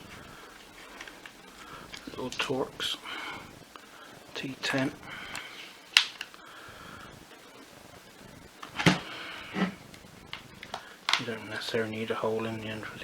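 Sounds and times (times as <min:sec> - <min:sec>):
sharp clicks: 0:05.3 - 0:06.4.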